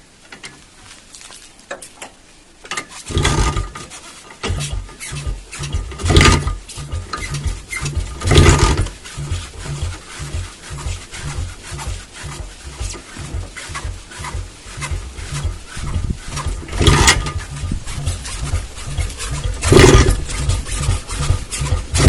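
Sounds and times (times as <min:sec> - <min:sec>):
motorcycle engine turning over: 0:02.7 - 0:22.0.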